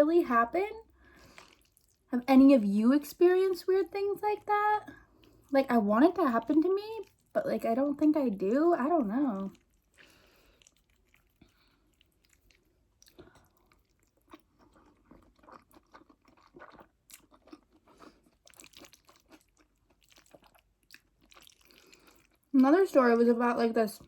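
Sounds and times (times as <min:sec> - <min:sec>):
person chewing: 0:00.8 - 0:02.1, 0:09.4 - 0:22.6.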